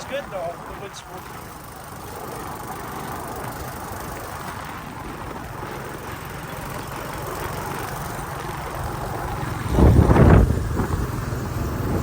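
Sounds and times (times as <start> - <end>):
motorcycle engine hum: 0.0 - 12.0
road noise: 0.0 - 12.0
wind noise on microphone: 8.7 - 12.0.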